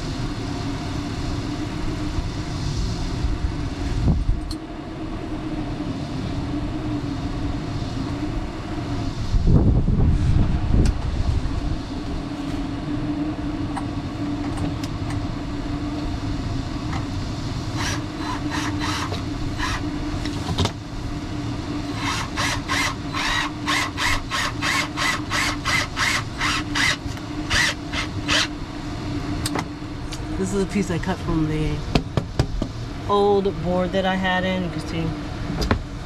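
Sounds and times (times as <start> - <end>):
low hum: 0.0 - 36.0
hand saw cutting wood: 17.8 - 19.8, 22.0 - 28.5.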